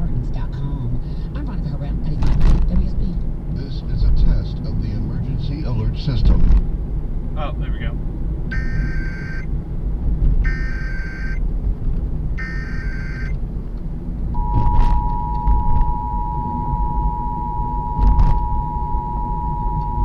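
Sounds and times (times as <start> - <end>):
low rumble: 0.0 - 20.0
buzzing data tones: 8.5 - 9.5, 10.4 - 11.4, 12.4 - 13.4, 14.3 - 20.0
two-tone attention signal: 8.5 - 9.5, 10.5 - 11.4, 12.4 - 13.3, 14.4 - 20.0.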